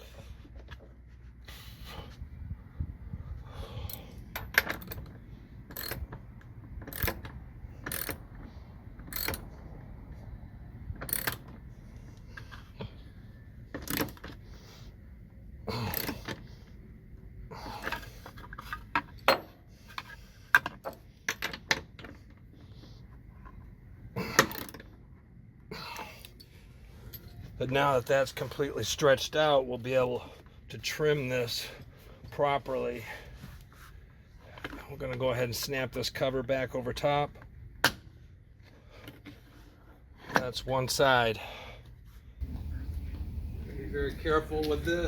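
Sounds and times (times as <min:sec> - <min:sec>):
metallic clicks of hand tools: 0:05.7 - 0:06.1, 0:06.9 - 0:08.2.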